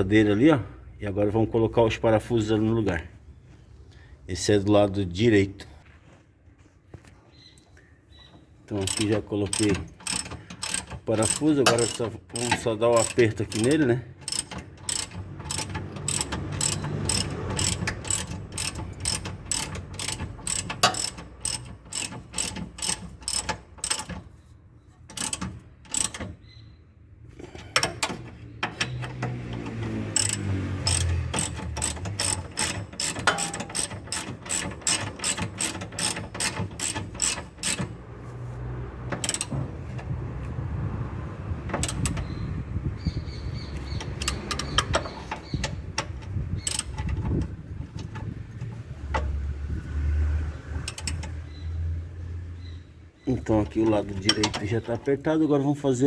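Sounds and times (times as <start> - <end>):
ratchet wrench clicking: 8.8 - 24.4, 25.1 - 26.5, 27.7 - 38.0, 39.2 - 39.6, 41.8 - 42.4, 43.8 - 49.3, 50.8 - 51.6.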